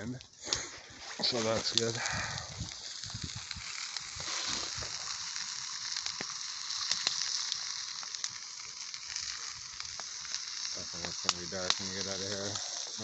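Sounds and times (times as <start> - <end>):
patties sizzling in a pan: 1.2 - 13.0
sharp fat pops: 2.6 - 12.4.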